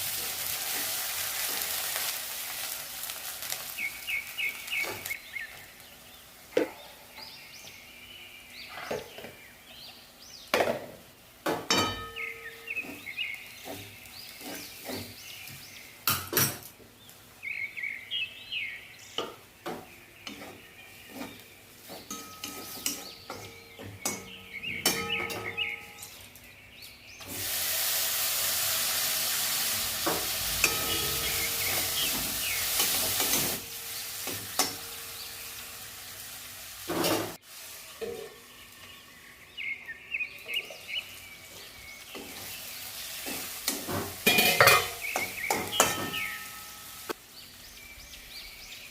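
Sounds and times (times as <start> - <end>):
food sizzling in hot oil: 0.0 - 6.5, 27.2 - 39.7, 40.4 - 47.3
metal utensil scraping a pan: 11.7 - 15.4, 20.2 - 26.3, 29.3 - 35.0, 42.2 - 47.1.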